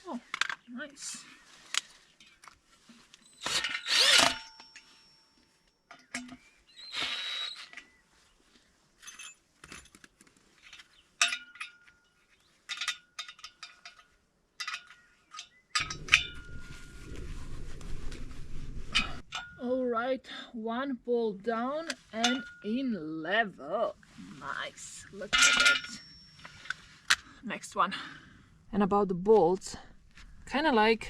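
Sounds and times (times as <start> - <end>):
metal clinks and knocks: 9.0 - 17.2, 18.9 - 19.6, 25.2 - 26.9
low rumble: 15.8 - 19.4.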